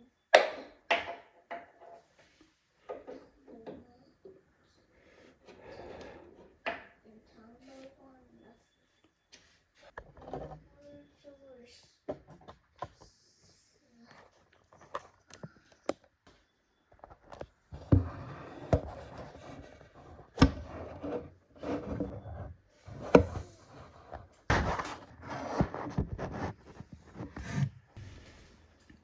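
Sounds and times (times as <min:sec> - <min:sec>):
shuffling and rubbing: 0:17.1 - 0:29.0.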